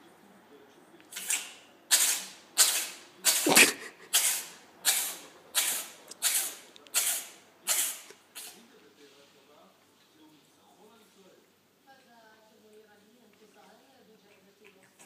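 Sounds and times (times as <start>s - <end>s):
cat sneezing: 1.1s - 8.6s.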